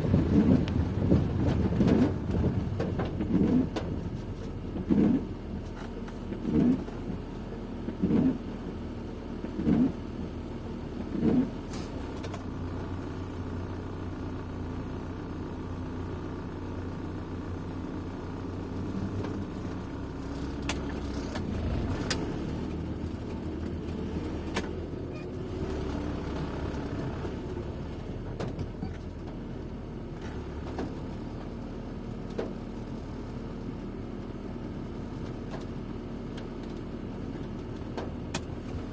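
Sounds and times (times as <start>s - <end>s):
car engine and tyre noise: 0.0s - 38.9s.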